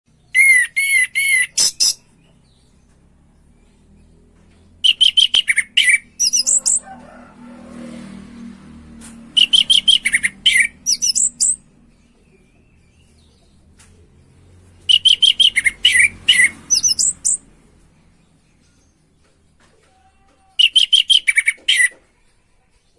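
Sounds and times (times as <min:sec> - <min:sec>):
thrush singing high whistled notes: 0:09.4 - 0:11.6, 0:14.9 - 0:17.4.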